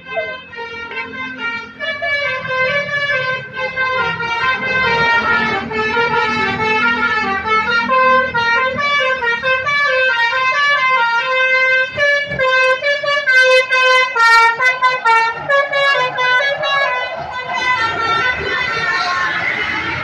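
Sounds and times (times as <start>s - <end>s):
bus musical air horn playing tune: 0.0s - 20.0s.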